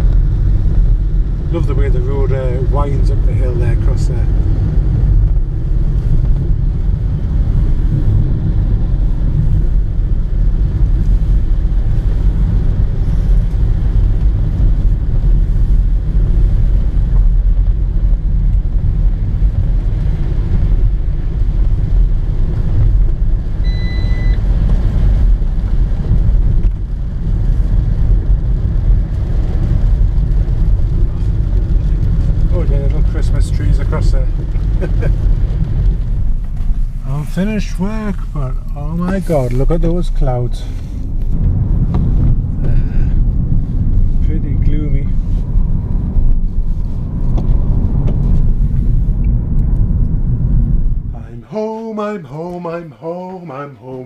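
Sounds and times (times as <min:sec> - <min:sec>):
car engine and tyres rumbling: 0:00.0 - 0:54.0
short high beep: 0:23.7 - 0:24.4.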